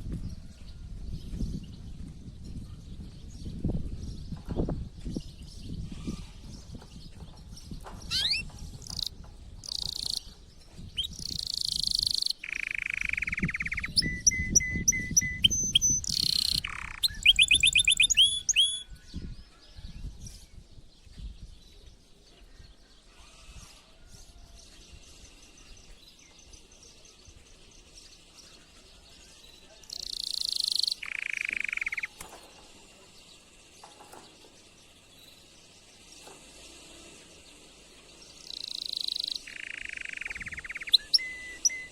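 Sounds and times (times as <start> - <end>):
canary singing: 5.9 - 10.4, 11.0 - 18.9, 29.4 - 41.9.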